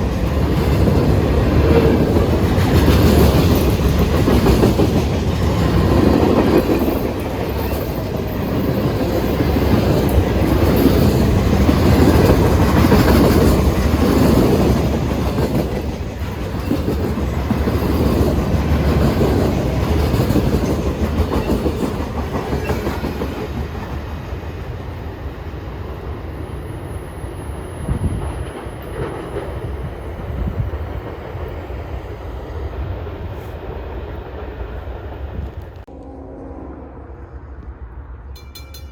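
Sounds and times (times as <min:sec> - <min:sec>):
train wheels clacking over rail joints: 0:00.0 - 0:24.1.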